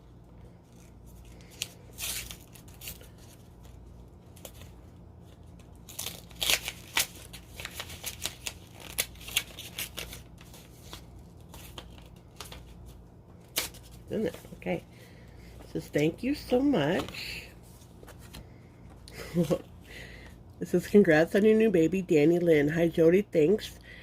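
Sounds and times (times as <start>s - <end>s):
paper and packaging rustling: 0.6s - 14.8s.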